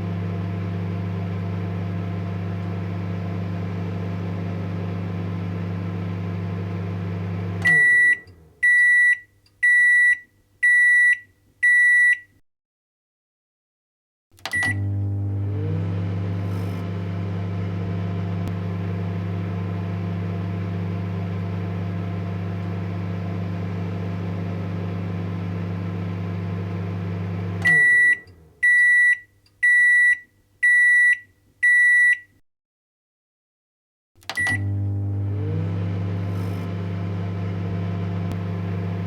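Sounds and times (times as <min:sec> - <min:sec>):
microwave oven humming: 0:00.0 - 0:08.7, 0:14.6 - 0:28.7, 0:34.4 - 0:39.0
microwave high beeps: 0:07.6 - 0:12.3, 0:14.6 - 0:14.9, 0:22.9 - 0:32.3, 0:34.4 - 0:34.8.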